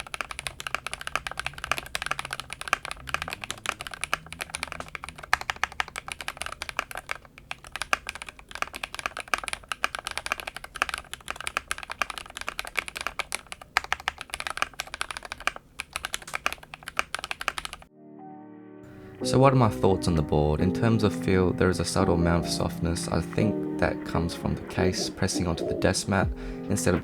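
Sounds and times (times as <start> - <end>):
mechanical keyboard typing: 0.0 - 17.9.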